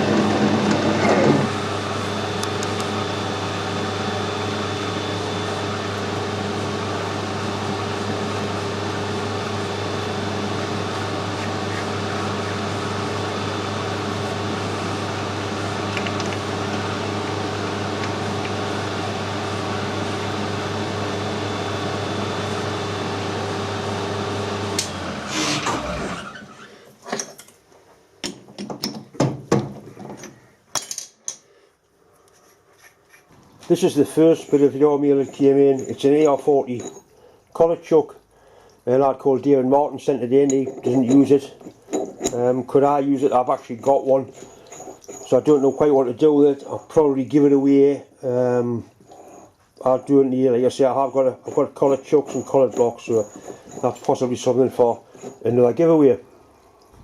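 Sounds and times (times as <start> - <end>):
metal lathe motor hum: 0.0 - 26.7, 33.7 - 37.1, 40.3 - 47.0, 50.4 - 56.8.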